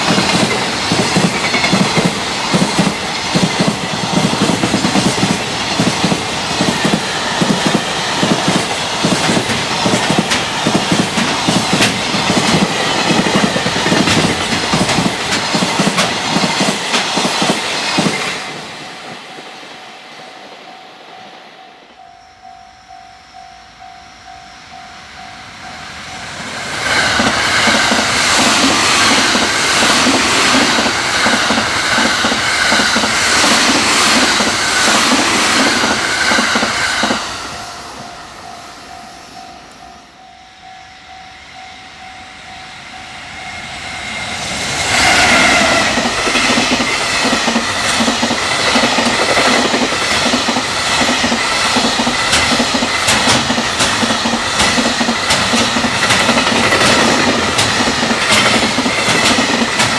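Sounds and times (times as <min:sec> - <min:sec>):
train wheels clickety-clack: 0:00.0 - 0:19.5, 0:25.8 - 0:38.4, 0:43.6 - 0:59.9
heavy train rumble: 0:00.0 - 0:59.9
level-crossing alarm ringing: 0:18.8 - 0:59.9.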